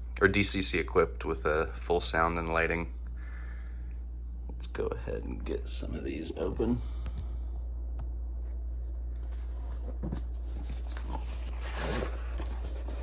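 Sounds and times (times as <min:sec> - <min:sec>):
steady low hum: 0:00.0 - 0:13.0
cardboard boxes rustling and scraping: 0:09.2 - 0:13.0.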